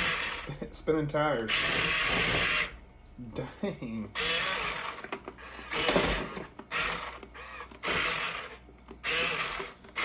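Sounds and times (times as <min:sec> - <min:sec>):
toy truck electric motor whirring: 0:00.0 - 0:00.5, 0:01.4 - 0:02.8, 0:04.2 - 0:10.0.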